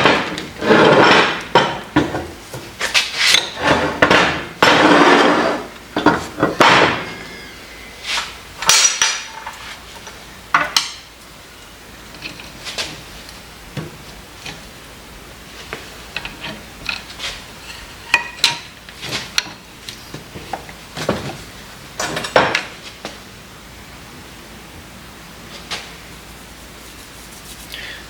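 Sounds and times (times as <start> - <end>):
metal tools clanking and scraping: 2.8 - 9.8.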